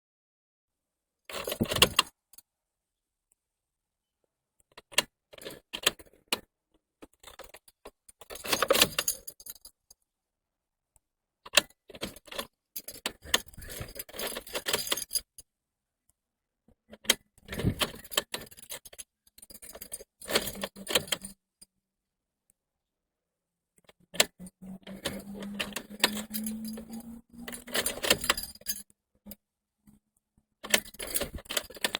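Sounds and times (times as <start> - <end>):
car keys jangling: 25.7 - 28.8.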